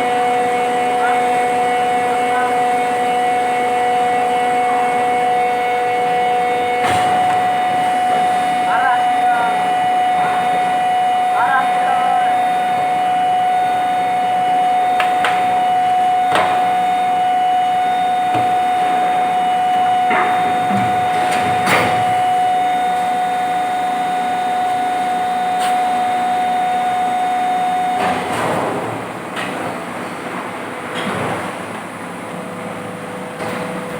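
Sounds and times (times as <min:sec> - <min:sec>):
steady high tone: 0:00.0 - 0:28.0
injection moulding machine running: 0:00.0 - 0:33.9.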